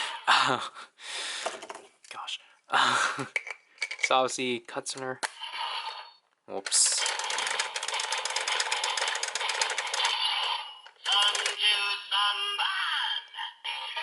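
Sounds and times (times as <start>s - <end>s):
toy belt rapid clicks: 6.7s - 11.6s
synthesized toy voice and jingle: 10.1s - 14.0s.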